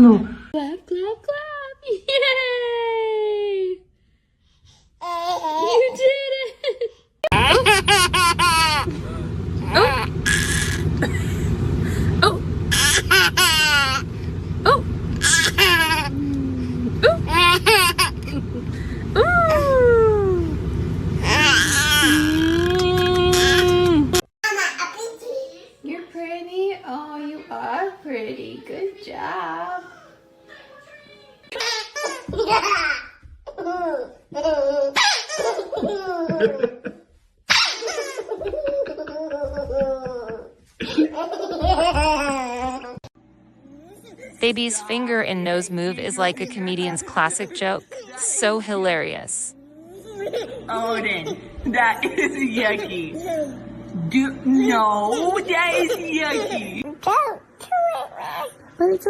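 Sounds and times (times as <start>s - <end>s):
baby laughing and squealing: 7.3s - 8.9s, 9.6s - 11.1s, 12.7s - 14.1s, 15.2s - 16.3s, 17.0s - 18.3s, 21.2s - 23.9s, 31.5s - 36.6s, 37.5s - 40.6s, 49.8s - 50.8s
low background rumble: 7.3s - 24.3s.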